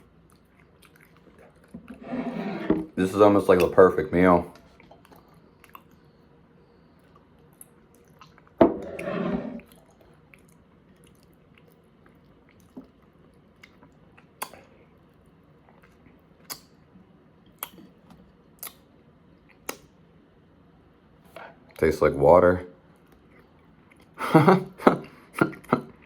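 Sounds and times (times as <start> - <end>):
close-up chewing: 0.0 - 1.9, 4.5 - 8.6, 9.6 - 16.7.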